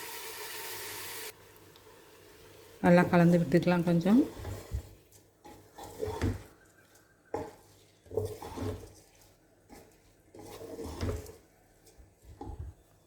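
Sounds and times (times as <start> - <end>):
spoon scraping metal pot: 4.0 - 12.6.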